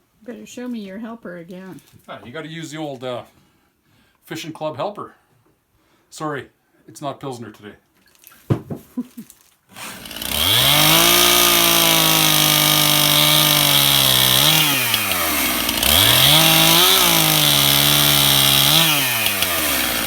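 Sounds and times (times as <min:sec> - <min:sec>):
chainsaw cutting wood: 0:09.7 - 0:20.0.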